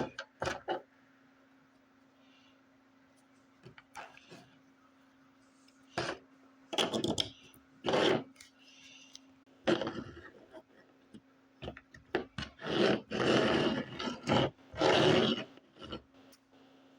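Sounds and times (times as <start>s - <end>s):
faint steady hum: 0.0s - 16.9s
rough scraping and rubbing: 7.8s - 8.4s, 12.4s - 16.1s.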